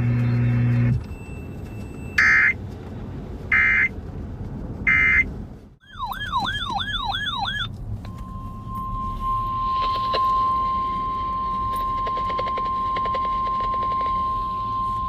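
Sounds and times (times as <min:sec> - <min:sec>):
warbling siren-like alert tone: 0:05.8 - 0:15.0
steady attention tone: 0:07.2 - 0:15.0
screechy digital data tone: 0:08.3 - 0:15.0.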